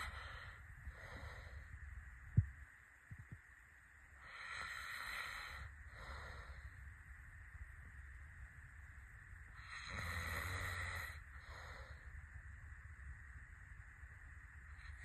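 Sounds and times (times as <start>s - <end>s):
person snoring: 9.6s - 11.2s.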